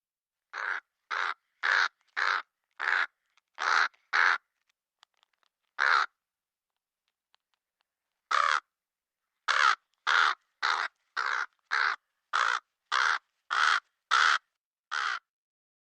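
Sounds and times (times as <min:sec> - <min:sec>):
crow cawing: 0:00.5 - 0:04.5, 0:05.8 - 0:06.2, 0:08.3 - 0:08.7, 0:09.4 - 0:15.3.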